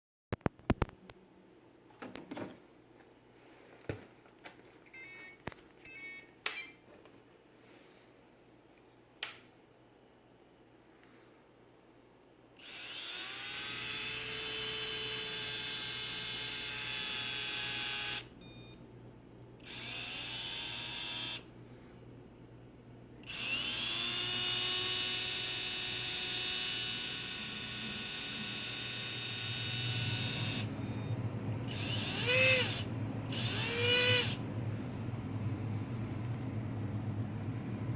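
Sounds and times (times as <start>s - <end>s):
stepped beeps: 4.9s - 6.8s, 18.4s - 18.8s, 30.8s - 31.2s
electric motor whining: 23.3s - 34.4s
low rumble: 34.4s - 37.9s.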